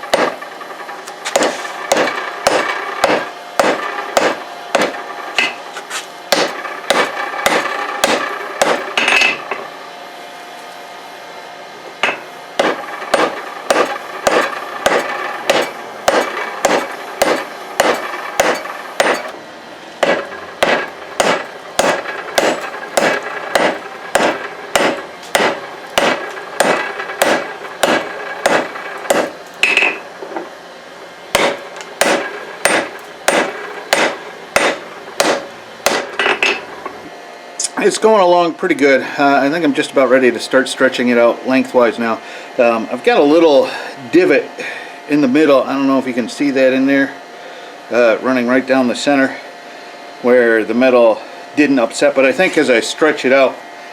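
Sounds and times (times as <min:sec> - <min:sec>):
hammer striking steel on anvil: 0:00.0 - 0:00.5, 0:01.3 - 0:05.6, 0:06.3 - 0:09.6, 0:12.0 - 0:19.4, 0:20.0 - 0:30.1, 0:31.3 - 0:37.0
anvil ringing: 0:00.0 - 0:00.6, 0:01.4 - 0:05.6, 0:06.3 - 0:09.6, 0:12.0 - 0:19.4, 0:20.0 - 0:30.1, 0:31.3 - 0:36.9.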